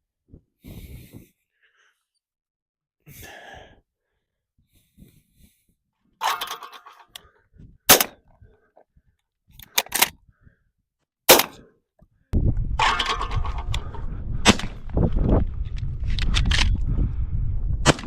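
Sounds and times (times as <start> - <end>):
shotgun shots: 7.9 - 8.2, 11.3 - 11.6, 14.4 - 14.8
metallic clacks of gun action: 9.6 - 10.2.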